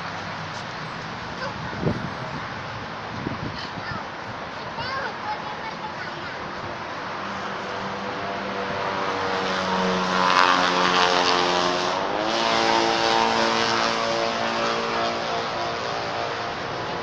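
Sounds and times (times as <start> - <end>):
motor engine droning past: 6.8 - 17.0.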